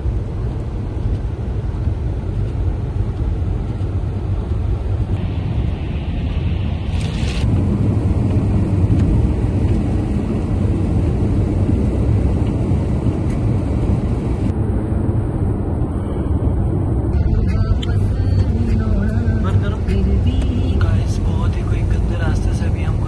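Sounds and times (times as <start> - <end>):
tyre and engine rumble: 0.0 - 23.0.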